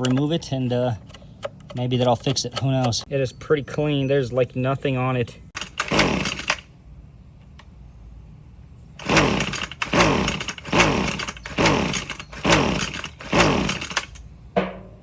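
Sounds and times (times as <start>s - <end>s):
recoil starter pulls: 0.0s - 3.2s, 5.6s - 6.6s, 9.0s - 14.2s
engine whirring: 5.6s - 6.7s, 9.0s - 14.2s.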